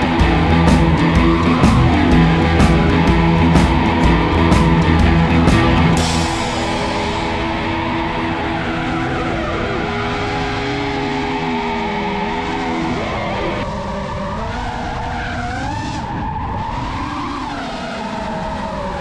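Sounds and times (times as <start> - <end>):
held tones: 0.0 - 11.0
drums: 0.0 - 11.6
rock music: 0.0 - 13.6
electric guitar: 0.0 - 15.0.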